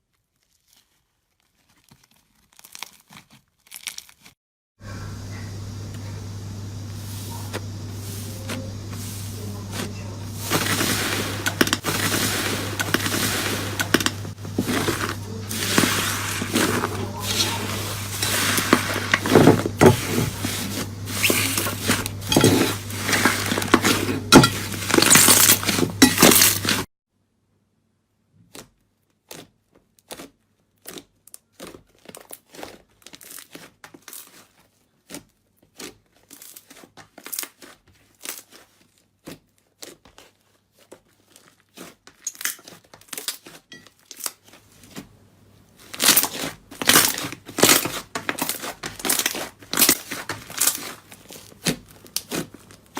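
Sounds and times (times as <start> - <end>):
crunchy slime crackling: 0.0 - 4.4, 6.4 - 26.8, 28.5 - 52.9
steady low hum: 4.8 - 26.8.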